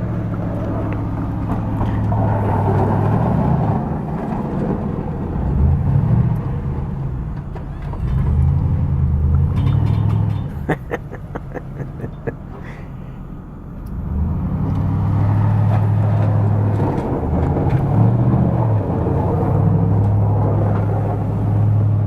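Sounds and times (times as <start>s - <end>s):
vehicles driving by: 0.0s - 22.0s.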